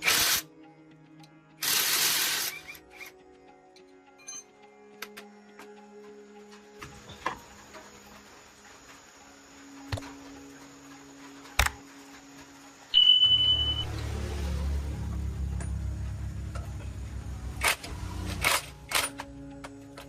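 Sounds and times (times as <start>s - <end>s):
high electronic beep: 12.9s - 14.1s.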